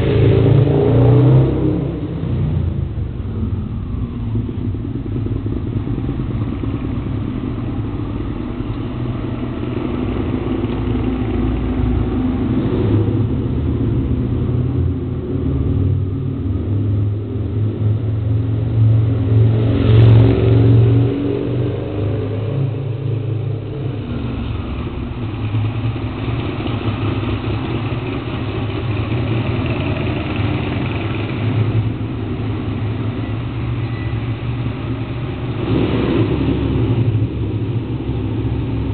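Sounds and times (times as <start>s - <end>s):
motorcycle engine running and revving: 0.0s - 38.9s.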